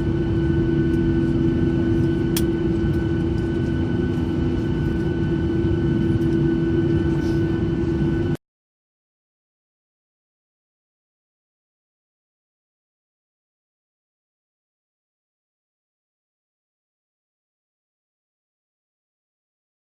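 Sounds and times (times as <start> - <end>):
jet cabin engine drone: 0.0 - 8.4.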